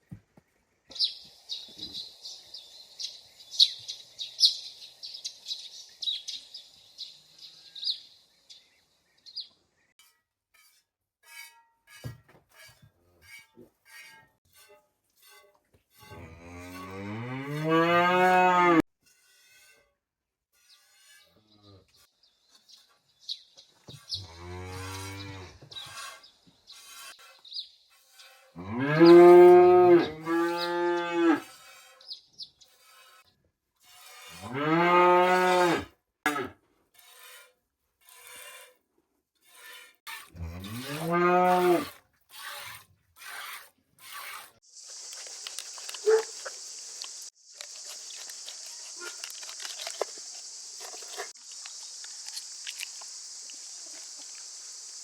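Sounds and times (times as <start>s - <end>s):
cow mooing: 16.1s - 18.8s, 40.5s - 41.9s
steady high-pitched hiss: 44.7s - 55.0s.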